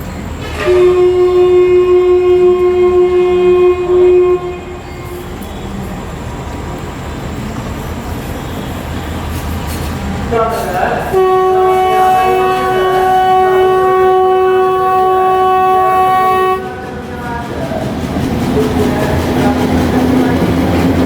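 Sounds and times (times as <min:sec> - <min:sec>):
train rumble: 0:00.0 - 0:21.0
locomotive horn: 0:00.4 - 0:05.8, 0:11.1 - 0:17.0.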